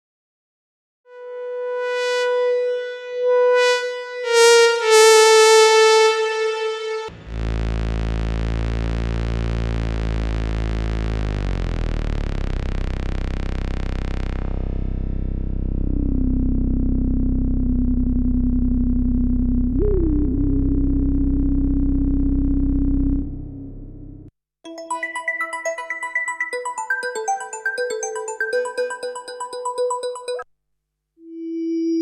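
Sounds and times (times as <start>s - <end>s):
buzzy low synthesizer drone: 1.1s - 24.3s
sustained synthesizer lead note: 1.1s - 30.4s.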